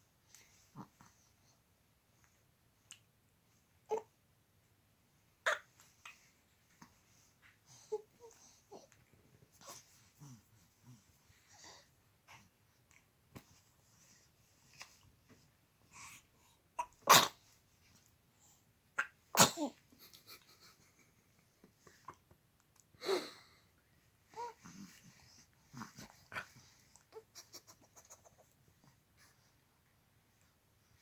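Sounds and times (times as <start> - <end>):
person sneezing: 17.1 - 17.4, 19.4 - 19.8.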